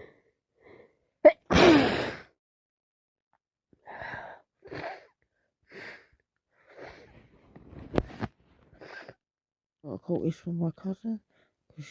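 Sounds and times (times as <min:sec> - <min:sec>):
person sneezing: 0:01.5 - 0:02.3.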